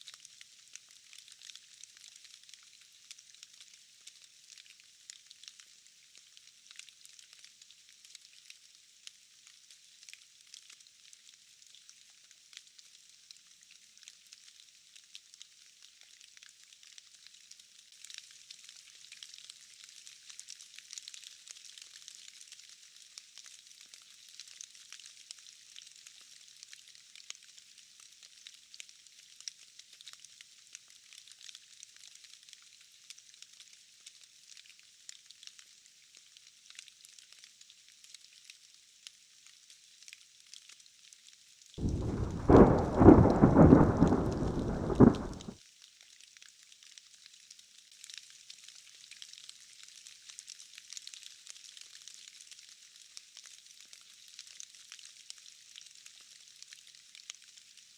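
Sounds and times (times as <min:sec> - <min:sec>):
steady rain: 0:41.8 - 0:45.6.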